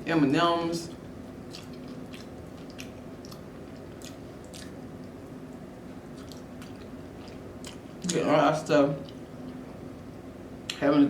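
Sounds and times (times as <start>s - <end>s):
low steady hum: 0.0s - 11.0s
chewing: 0.9s - 8.2s, 9.0s - 10.1s
wet mouth clicks: 1.5s - 5.2s, 6.2s - 7.8s.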